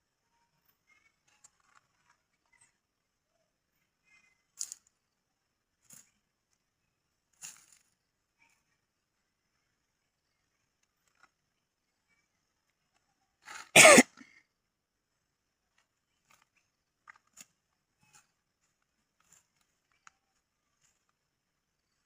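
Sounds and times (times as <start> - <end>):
person coughing: 13.8 - 14.2.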